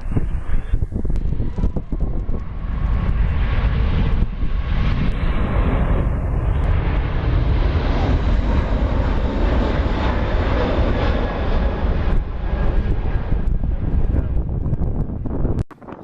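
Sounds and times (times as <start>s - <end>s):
airplane engines running: 0.0s - 16.0s
wind buffeting microphone: 0.0s - 16.0s.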